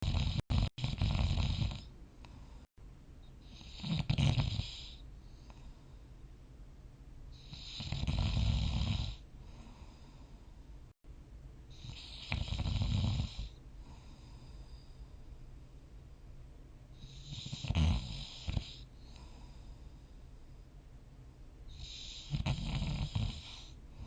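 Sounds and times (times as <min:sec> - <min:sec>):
person snoring: 0:00.0 - 0:01.9, 0:03.6 - 0:05.0, 0:07.5 - 0:09.2, 0:11.8 - 0:14.1, 0:17.1 - 0:18.8, 0:21.8 - 0:23.8.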